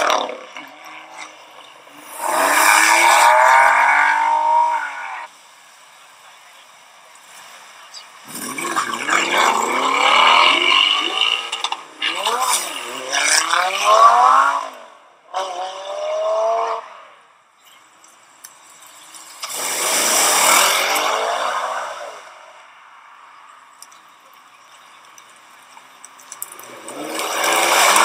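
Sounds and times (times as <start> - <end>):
car engine accelerating hard: 26.7 - 28.0.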